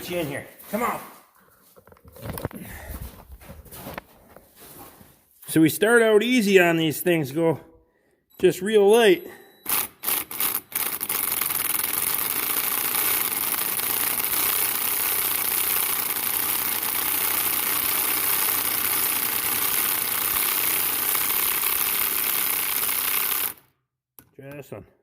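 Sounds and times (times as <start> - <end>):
impact wrench hammering bolt: 9.6 - 15.3.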